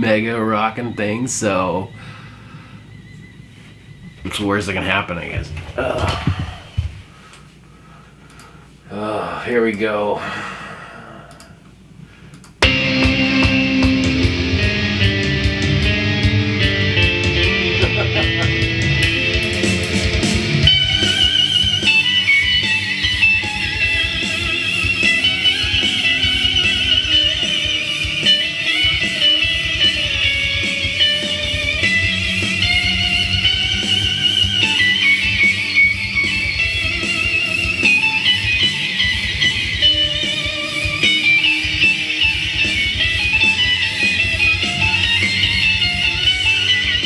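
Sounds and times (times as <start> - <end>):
clean electric guitar solo: 12.6 - 47.0
heavy rhythm guitar: 12.6 - 47.0.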